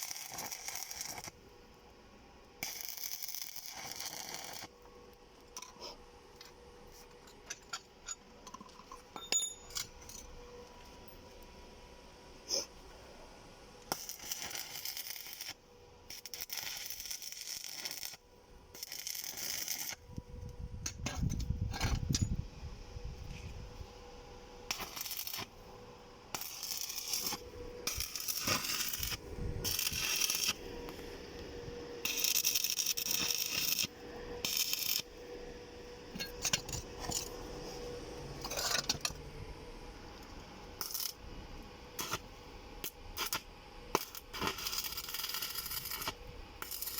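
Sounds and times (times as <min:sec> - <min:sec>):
metal clinking and scraping: 0:05.6 - 0:10.4, 0:36.1 - 0:37.5, 0:38.4 - 0:39.2.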